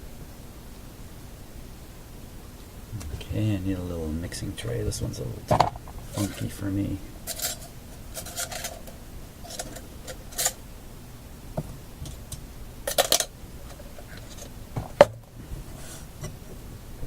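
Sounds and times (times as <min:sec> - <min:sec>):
rustles of items handled: 0:04.4 - 0:10.6, 0:11.6 - 0:16.7.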